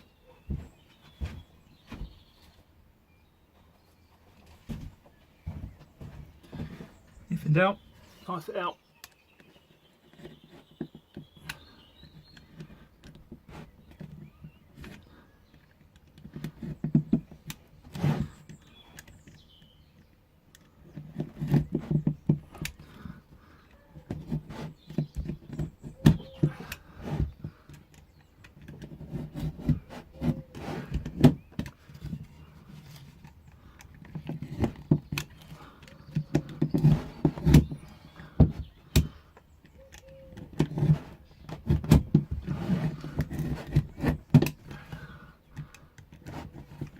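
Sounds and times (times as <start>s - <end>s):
tools grating on wooden joints: 5.4s - 8.6s, 9.5s - 19.7s, 20.6s - 46.9s.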